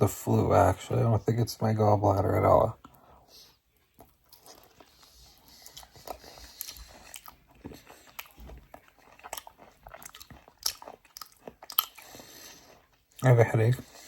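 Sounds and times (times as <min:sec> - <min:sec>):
person chewing orange segments: 0:02.8 - 0:14.0.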